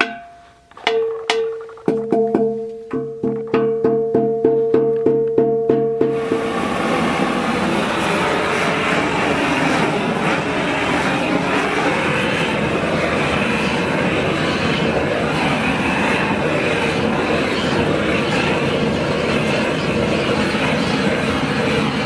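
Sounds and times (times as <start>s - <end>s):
hammer taps on handpan: 0.0s - 6.3s
loud rushing noise: 6.1s - 22.0s.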